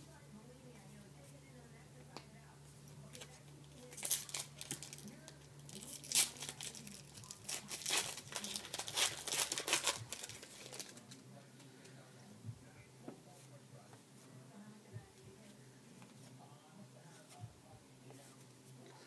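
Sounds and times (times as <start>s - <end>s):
wrapper tearing and crinkling: 3.9s - 11.2s.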